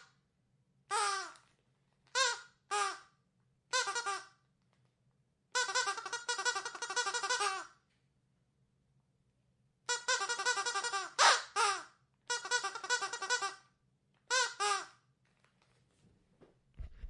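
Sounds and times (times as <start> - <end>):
squeaky dog toy squeaking: 0.9 - 1.4, 2.1 - 3.1, 3.7 - 4.4, 5.5 - 7.8, 9.9 - 13.7, 14.3 - 15.0.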